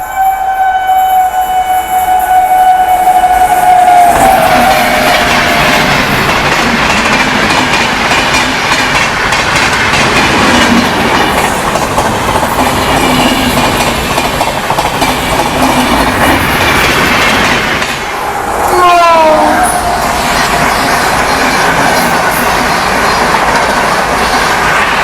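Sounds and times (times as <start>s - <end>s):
train horn: 0.0s - 6.2s, 18.0s - 20.8s
train wheels rushing on rails: 0.0s - 25.0s
wheels clacking over rail joints: 4.9s - 18.3s, 19.8s - 25.0s.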